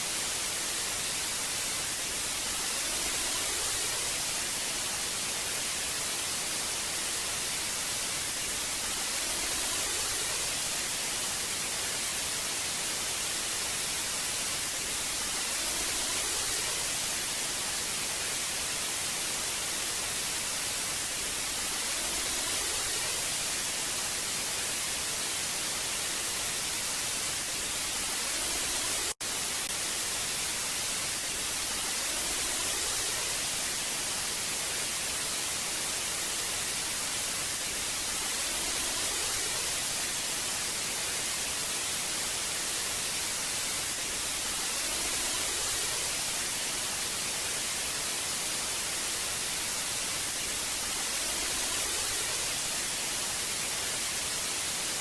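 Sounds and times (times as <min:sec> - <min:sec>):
tv static hiss: 0:00.0 - 0:55.0.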